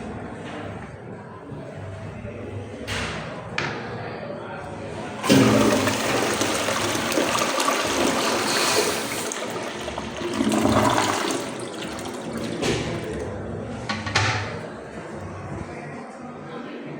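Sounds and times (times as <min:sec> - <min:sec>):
toilet flush water rushing: 0:05.2 - 0:13.4.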